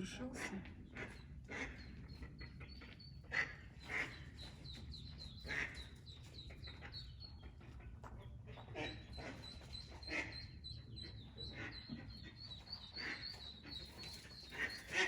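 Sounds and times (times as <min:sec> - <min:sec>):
ducklings peeping: 0:08.8 - 0:15.0.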